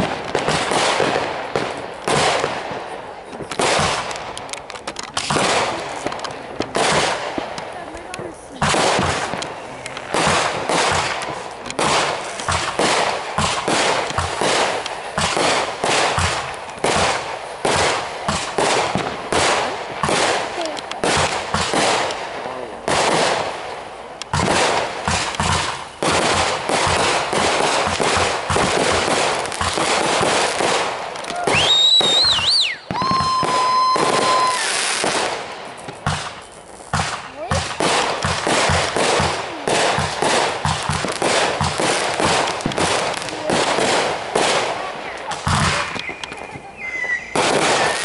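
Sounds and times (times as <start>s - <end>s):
fireworks bangs and crackles: 0.0s - 48.0s
whistling firework shells: 24.0s - 48.0s.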